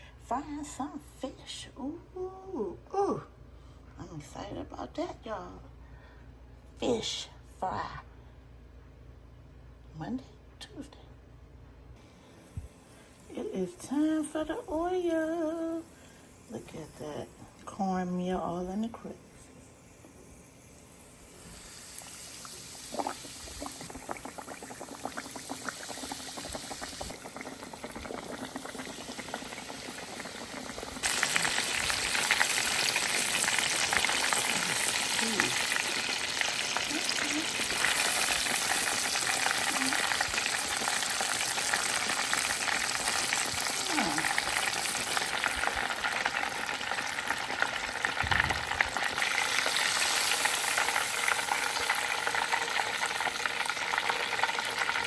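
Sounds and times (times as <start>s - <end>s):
fish frying in hot oil: 21.1s - 55.0s.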